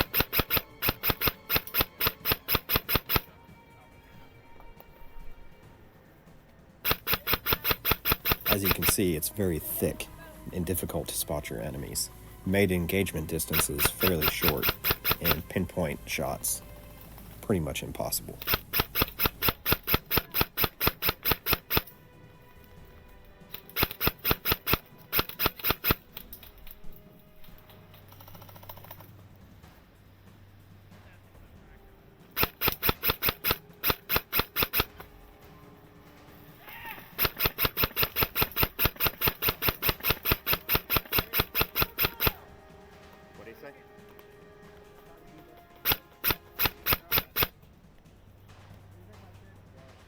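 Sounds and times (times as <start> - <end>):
airsoft rifle shots: 0.0 - 3.4, 6.8 - 10.0, 10.7 - 21.9, 23.5 - 26.8, 32.3 - 35.2, 37.0 - 42.4, 45.6 - 47.6
faint background music: 0.0 - 50.0.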